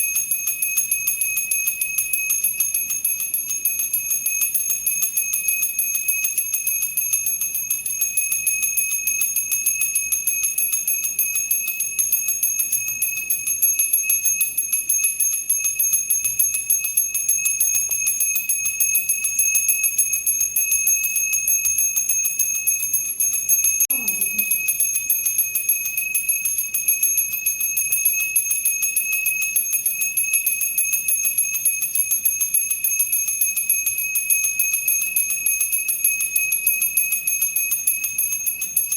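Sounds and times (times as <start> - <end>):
temple bell ringing: 22.7 - 25.9.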